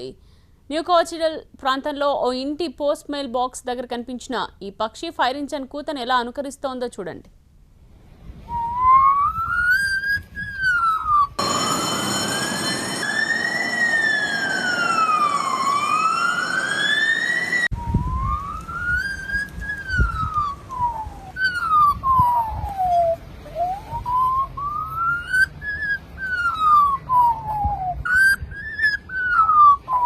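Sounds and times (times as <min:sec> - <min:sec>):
magpie whistling siren wails: 0:08.5 - 0:30.0
siren wail: 0:08.6 - 0:30.0.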